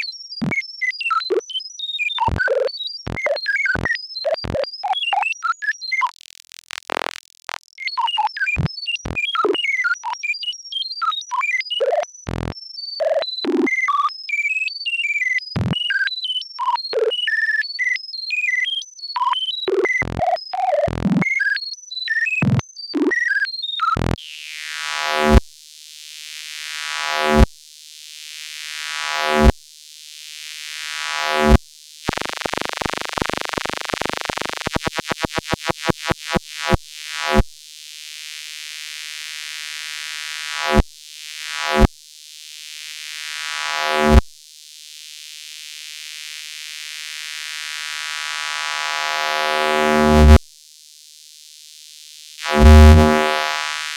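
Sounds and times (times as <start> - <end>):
electronic pulses: 31.4 - 35.7, 49.8 - 50.4, 52.5 - 53.5
robot-like chirps and beeps: 32.1 - 35.5, 52.6 - 53.3
swelling synth tones: 52.6 - 53.2.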